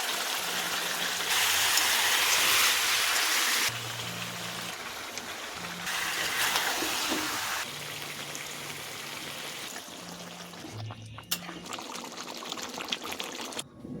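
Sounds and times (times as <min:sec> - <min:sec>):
watery hiss of pan cooking: 0:00.0 - 0:03.8, 0:05.8 - 0:07.7
background music low notes: 0:03.7 - 0:14.0.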